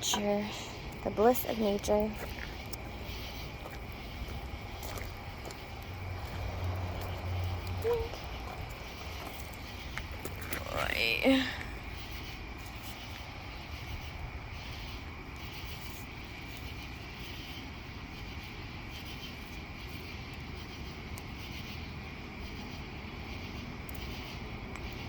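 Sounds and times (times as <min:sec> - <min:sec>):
crickets trilling: 0:00.0 - 0:25.0
low rumble: 0:01.9 - 0:15.1.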